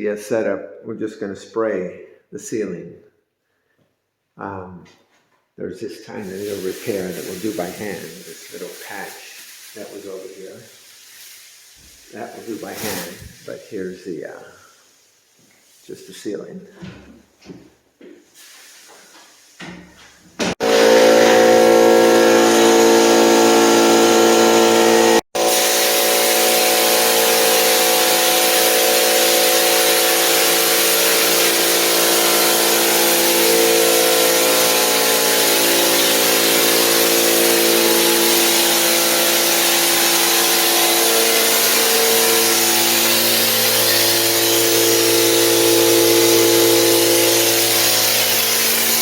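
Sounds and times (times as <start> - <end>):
texture spray gun hissing: 6.2 - 13.6, 18.4 - 19.8, 20.6 - 49.0
air compressor motor: 20.6 - 49.0.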